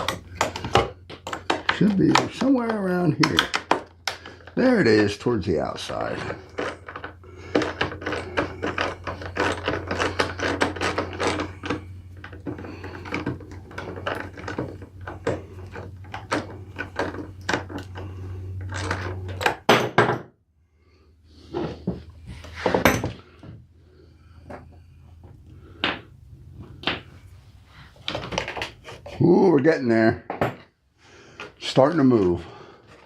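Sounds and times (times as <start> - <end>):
screwdriver clicking and scraping: 0.0 - 4.7, 5.9 - 19.6
steady low hum: 0.0 - 19.7.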